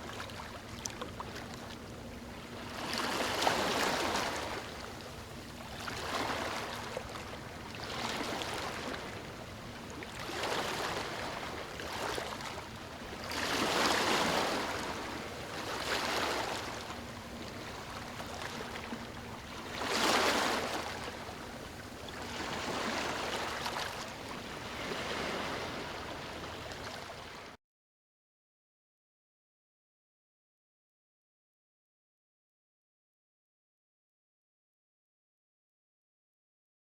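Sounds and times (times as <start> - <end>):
ocean waves washing on shore: 0.0 - 27.6
waves breaking: 0.0 - 27.6.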